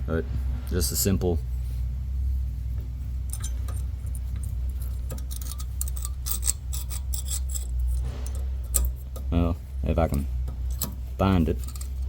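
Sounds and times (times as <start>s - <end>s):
steady low rumble: 0.0s - 12.0s
metal parts clinking and scraping: 3.2s - 9.3s, 10.0s - 12.0s.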